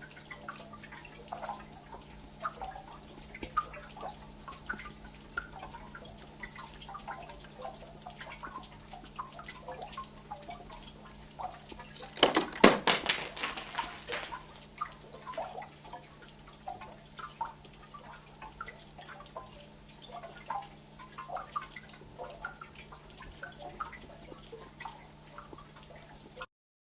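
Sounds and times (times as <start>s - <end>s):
water dripping: 0.0s - 26.4s
quick knocks and crackles: 12.0s - 14.6s.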